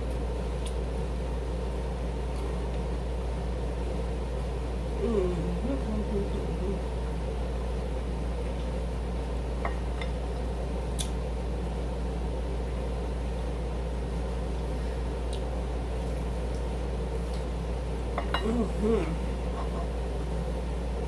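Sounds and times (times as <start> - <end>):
low background hum: 0.0 - 21.0.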